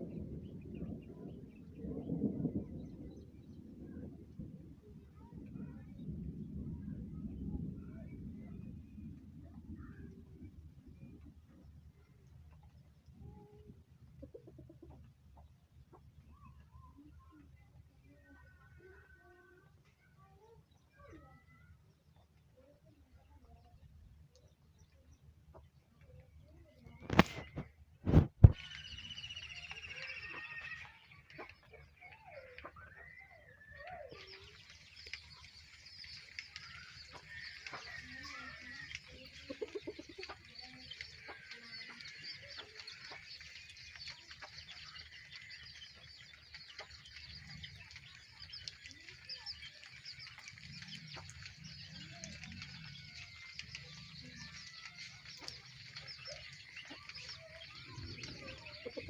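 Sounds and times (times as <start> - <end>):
chickens clucking: 14.1 - 16.2, 28.1 - 33.0, 33.8 - 59.0.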